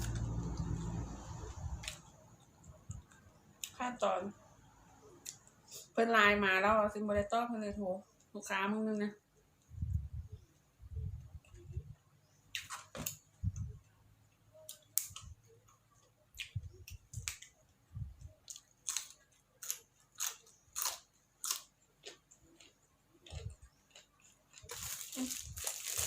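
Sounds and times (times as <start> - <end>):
crunchy chewing of vegetables: 0.0 - 3.8, 18.3 - 26.0.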